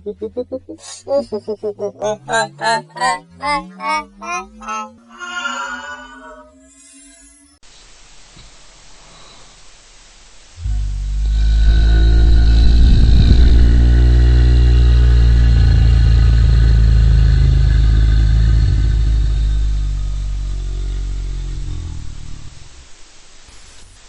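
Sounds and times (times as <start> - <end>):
steady layered tones: 0.0 - 6.6
deep rumbling drone: 0.0 - 7.0, 10.6 - 23.0.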